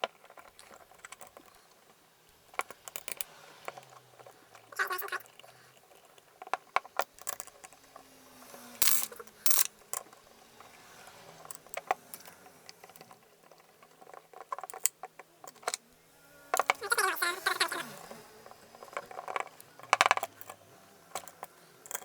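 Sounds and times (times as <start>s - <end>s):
allen key clicking on screws: 0.1s - 7.8s, 11.3s - 15.8s, 18.5s - 22.0s.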